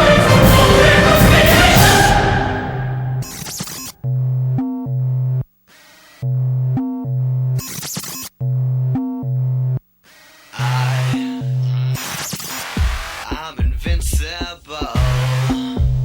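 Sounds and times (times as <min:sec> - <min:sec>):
short noisy electronic hits: 0:00.0 - 0:04.0.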